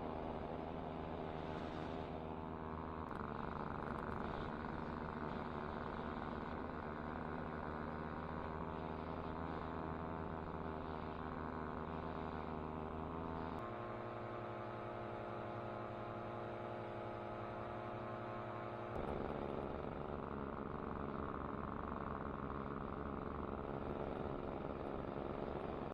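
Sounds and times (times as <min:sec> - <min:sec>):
paramotor engine running: 0:00.0 - 0:25.9.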